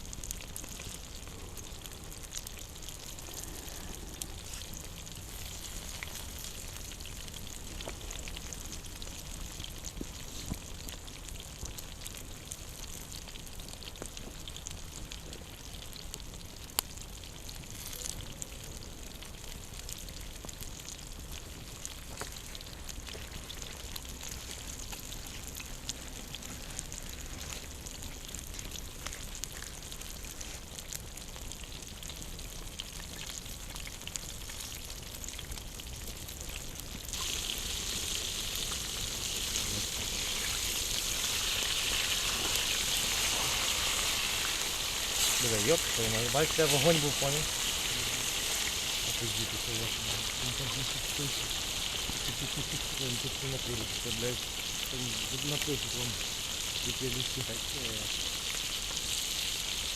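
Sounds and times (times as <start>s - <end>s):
campfire crackling and popping: 0.0s - 59.9s
food sizzling: 0.0s - 59.9s.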